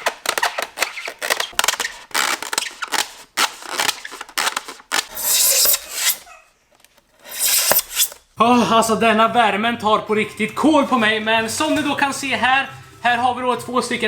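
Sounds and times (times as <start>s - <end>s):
blade sawing through styrofoam: 5.0s - 6.2s, 7.2s - 8.2s.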